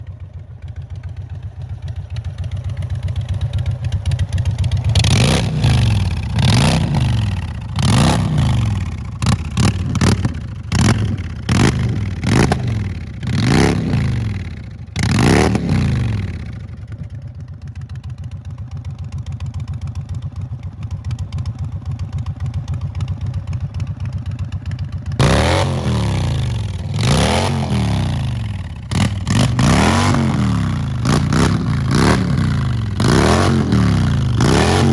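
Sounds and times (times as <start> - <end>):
motorcycle engine revving: 0.0 - 34.9.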